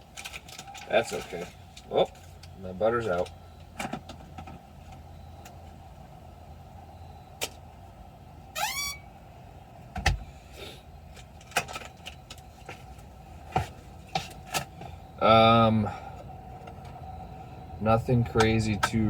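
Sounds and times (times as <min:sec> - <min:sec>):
steady low hum: 0:00.0 - 0:19.0
short rising squeak: 0:08.6 - 0:09.1.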